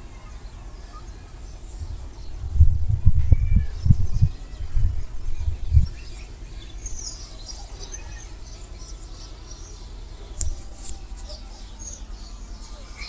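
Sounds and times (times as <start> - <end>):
small birds chirping: 0.0 - 13.0
low rumbling thumps: 1.9 - 6.0
sharp click: 10.4 - 11.4.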